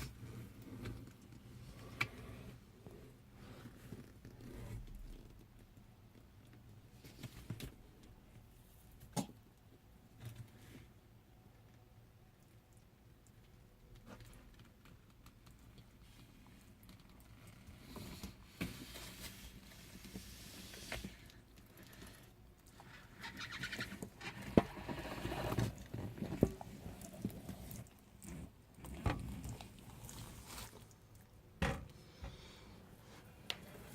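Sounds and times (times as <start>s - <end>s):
lizard rustling and scraping: 17.7s - 21.3s, 22.8s - 30.9s.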